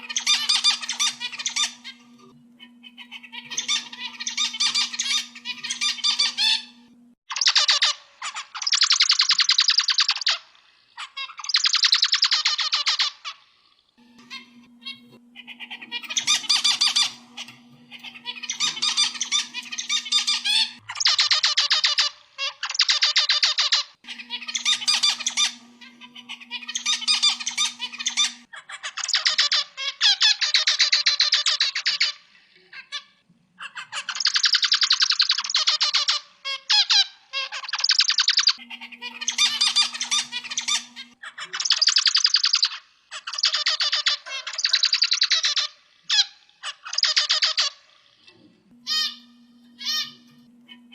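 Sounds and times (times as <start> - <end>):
finch singing buzzy syllables: 0.0 - 7.9, 14.0 - 29.6, 37.5 - 45.7, 48.7 - 50.9.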